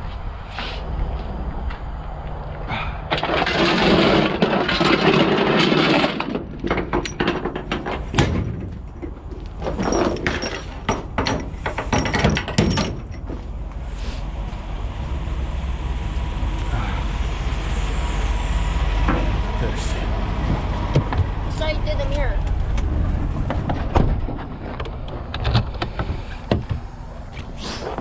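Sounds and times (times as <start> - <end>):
engine rumble: 0.0 - 28.0
sharp metal knocks and clanks: 3.1 - 13.4
loud rushing noise: 13.5 - 28.0.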